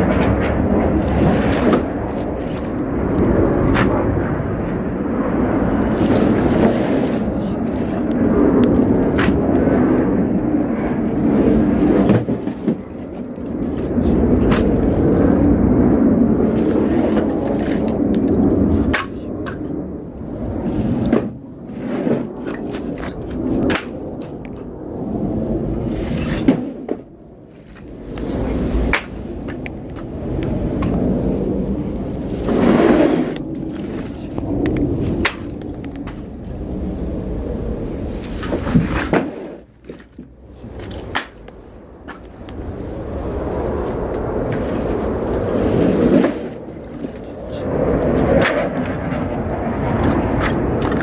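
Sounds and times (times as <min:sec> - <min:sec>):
sharp knocks and thuds: 0:00.0 - 0:04.1, 0:11.4 - 0:15.4, 0:20.8 - 0:24.4
rumbling handling noise: 0:00.0 - 0:51.0.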